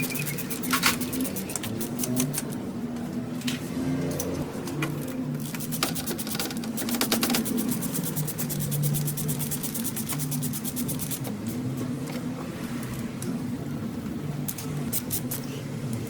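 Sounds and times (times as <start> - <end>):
ratchet wrench clicking: 0.0 - 2.6, 5.6 - 11.2.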